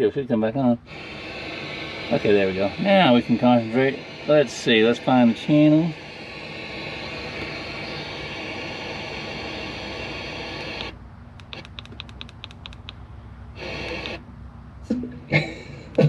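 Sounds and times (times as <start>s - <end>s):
radio static hissing: 0.6s - 14.2s
radio tuning clicks: 0.9s - 13.0s, 13.6s - 14.2s.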